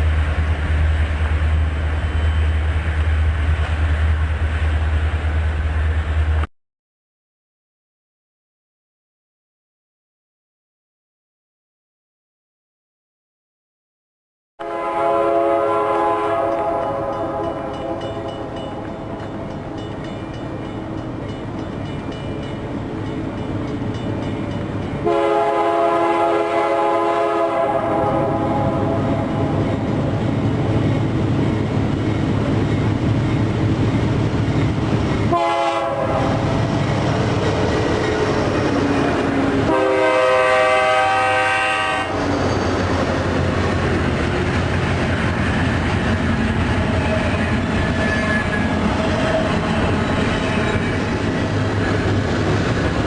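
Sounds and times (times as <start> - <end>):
passing train rumble: 0.0 - 6.5, 14.6 - 53.0
train horn blasts: 14.6 - 19.2, 25.0 - 29.6, 35.3 - 36.6, 39.6 - 42.3.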